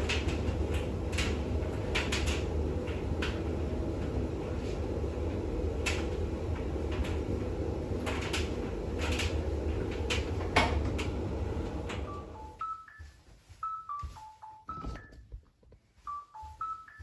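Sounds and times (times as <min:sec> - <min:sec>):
washing machine spinning hum: 0:00.0 - 0:15.4.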